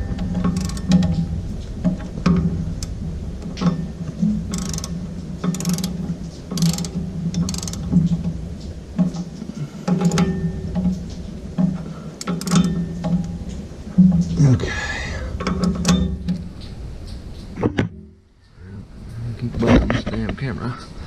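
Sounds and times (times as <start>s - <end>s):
ratchet wrench clicking: 0.5s - 1.2s, 4.5s - 7.9s, 12.2s - 12.8s.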